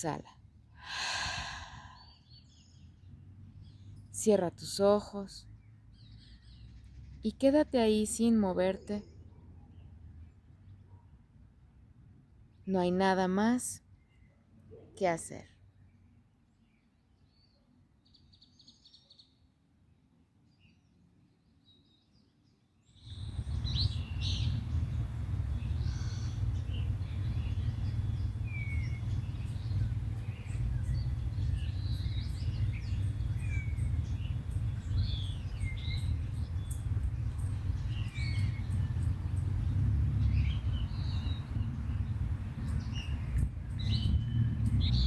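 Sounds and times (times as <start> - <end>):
birds chirping and singing: 23.0 - 45.0
low rumble: 23.1 - 45.0.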